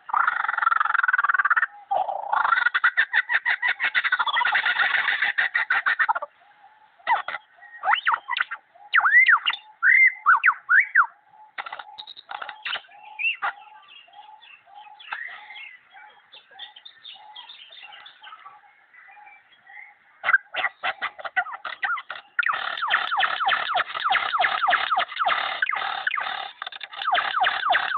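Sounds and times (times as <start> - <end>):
bird clicking and chatter: 11.6 - 13.6, 20.3 - 27.9.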